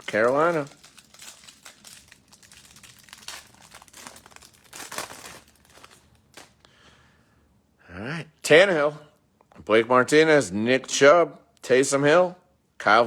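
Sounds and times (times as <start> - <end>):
foil wrapper crinkling: 0.0 - 6.7.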